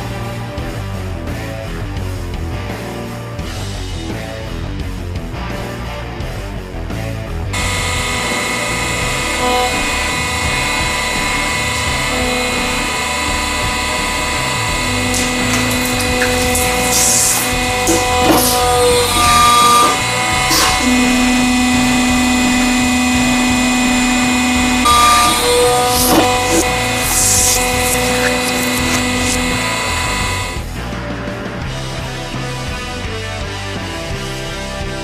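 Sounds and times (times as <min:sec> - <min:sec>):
press machine whine: 0:07.6 - 0:30.8.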